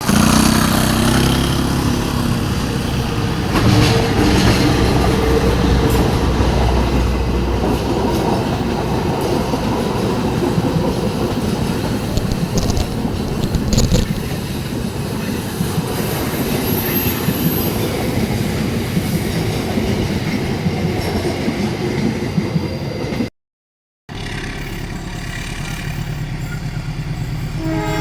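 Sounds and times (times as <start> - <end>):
wheels clattering over rail joints: 0.0 - 18.4
train cars rolling on rails: 0.0 - 23.3, 24.1 - 28.0
faint high wheel squeal: 24.2 - 28.0.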